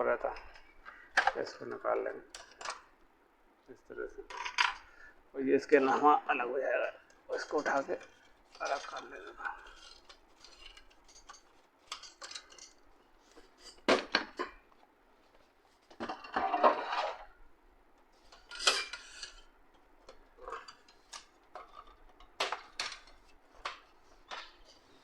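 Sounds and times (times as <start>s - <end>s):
plastic parts knocking and clattering: 0.2s - 2.9s, 4.3s - 5.0s, 7.3s - 17.3s, 18.2s - 25.0s
plastic rattling: 7.3s - 14.6s, 20.0s - 25.0s.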